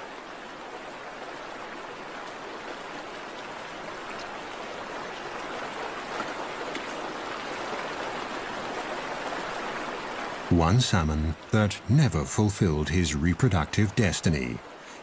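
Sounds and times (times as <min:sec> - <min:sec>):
stream water rushing: 0:00.0 - 0:15.0.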